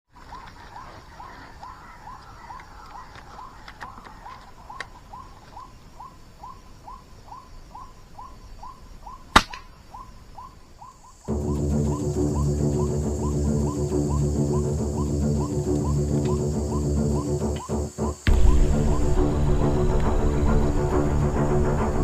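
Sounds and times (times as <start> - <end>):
air rifle shot: 9.3 - 9.7.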